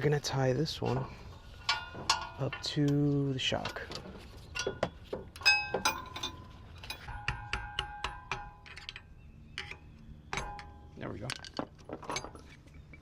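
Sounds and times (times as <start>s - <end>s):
metal hooks clinking: 1.6s - 7.4s.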